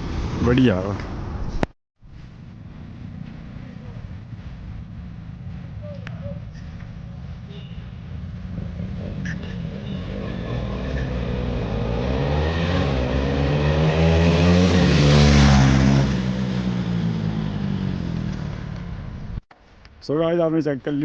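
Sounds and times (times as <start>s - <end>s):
motorcycles accelerating past: 8.3s - 19.0s.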